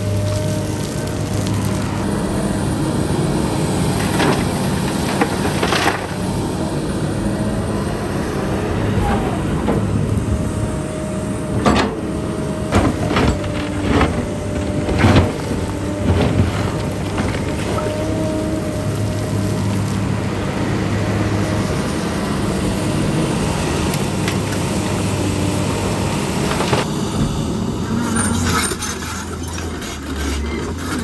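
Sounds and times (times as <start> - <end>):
excavator diesel engine running: 0.0 - 31.0
sharp knocks and clanks: 11.6 - 18.7.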